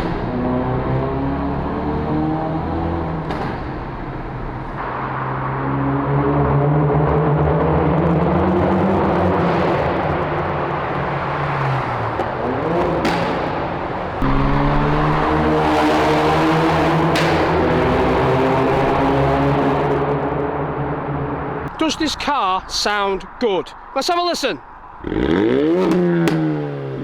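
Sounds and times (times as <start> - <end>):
car engine accelerating: 0.0 - 24.0, 24.6 - 27.0
exhaust crack: 9.3 - 27.0.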